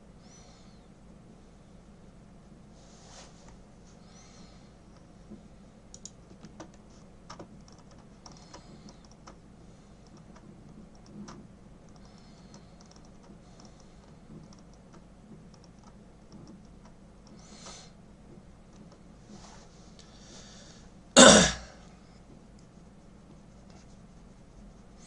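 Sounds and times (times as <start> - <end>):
keyboard typing: 5.9 - 9.4, 10.0 - 17.4.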